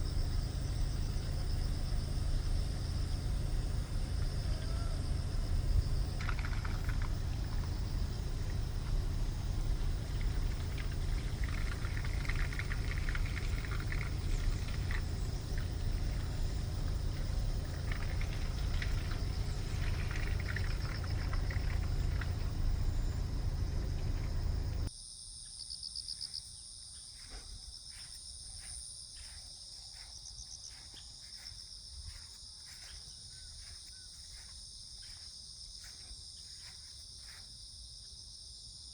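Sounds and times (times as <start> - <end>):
insects trilling: 0.0 - 24.9, 25.6 - 38.8
loud low rumble: 0.0 - 24.9
faint ticks: 5.4 - 24.9.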